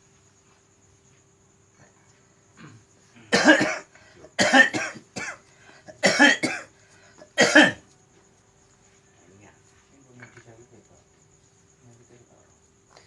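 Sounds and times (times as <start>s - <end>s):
person coughing hard: 2.6s - 7.8s.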